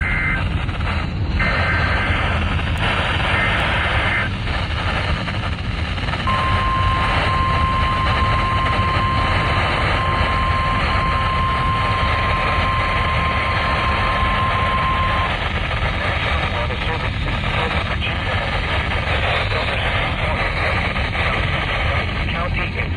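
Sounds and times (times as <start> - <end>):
radio static: 0.0 - 22.9
warbling data tones: 1.4 - 22.0
steady alarm tone: 6.2 - 15.3.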